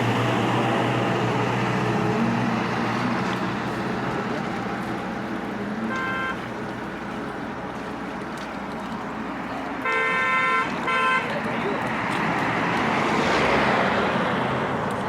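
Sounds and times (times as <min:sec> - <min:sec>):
road traffic: 0:00.0 - 0:15.0
vehicle horn honking: 0:05.9 - 0:06.4, 0:09.8 - 0:11.3.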